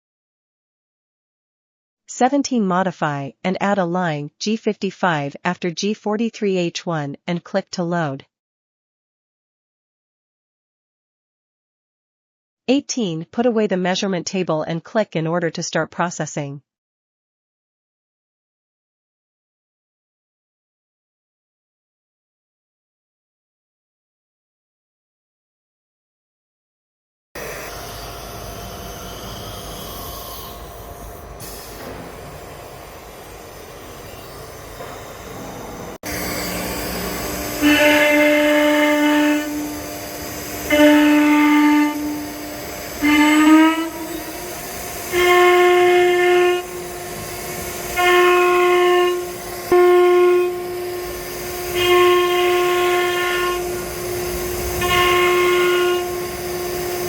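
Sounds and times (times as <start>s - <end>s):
cnc router running: 27.4s - 32.0s, 32.6s - 57.0s
high-pitched spindle whine: 32.6s - 48.0s, 48.6s - 57.0s.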